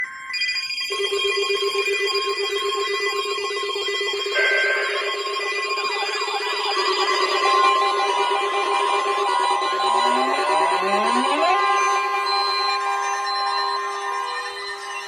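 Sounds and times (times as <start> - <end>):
bright high tone: 4.4 - 15.0
weather radio alarm tones: 4.4 - 15.0
warbling tones: 5.8 - 15.0.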